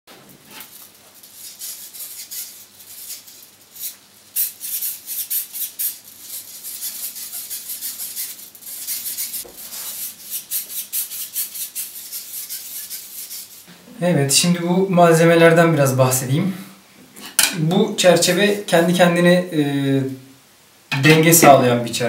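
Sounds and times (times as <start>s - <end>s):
close rustling and scraping: 0.1s - 4.0s.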